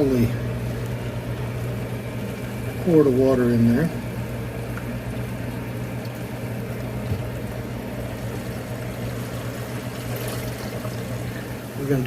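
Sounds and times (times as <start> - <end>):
ice maker humming: 0.0 - 12.0
water pouring from plastic bottle: 9.2 - 11.4.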